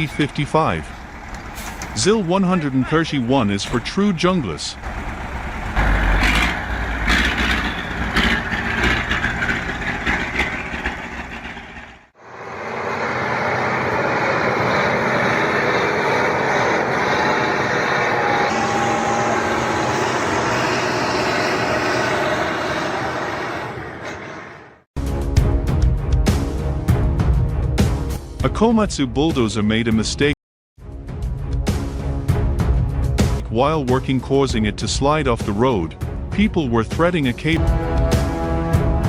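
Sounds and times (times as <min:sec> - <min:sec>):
heavy vehicle engines running: 0:00.0 - 0:24.8.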